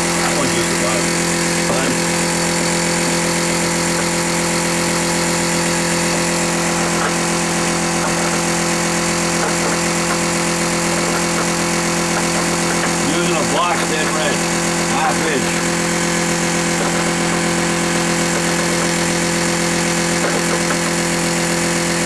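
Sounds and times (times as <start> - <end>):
machine drone: 0.0 - 22.0.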